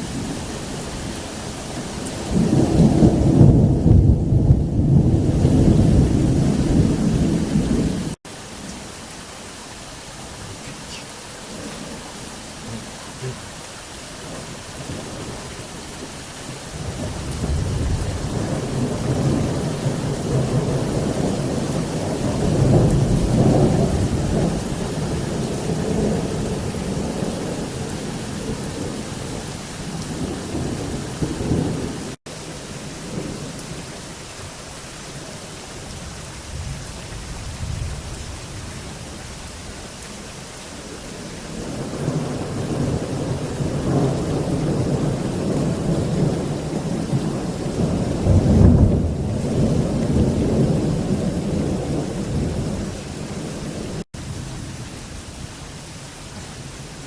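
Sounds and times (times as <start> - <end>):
heavy rain: 0.0 - 57.0
rolling thunder: 1.8 - 8.2, 16.7 - 32.2, 41.5 - 54.4.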